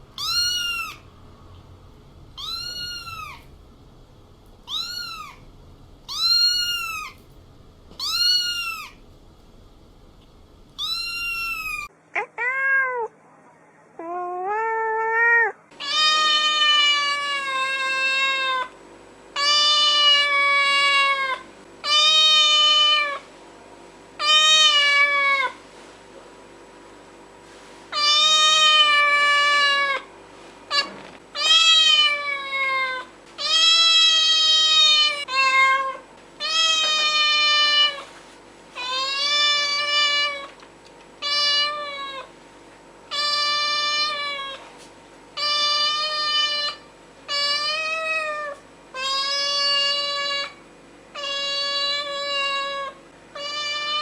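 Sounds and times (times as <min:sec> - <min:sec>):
cat meowing: 0:00.2 - 0:01.1, 0:02.3 - 0:03.6, 0:04.6 - 0:05.5, 0:06.1 - 0:07.3, 0:07.9 - 0:09.0, 0:10.8 - 0:13.1, 0:14.0 - 0:18.7, 0:28.0 - 0:30.0, 0:30.7 - 0:38.0, 0:38.8 - 0:40.6, 0:41.2 - 0:42.3, 0:43.1 - 0:44.7, 0:45.4 - 0:50.6, 0:51.2 - 0:54.0.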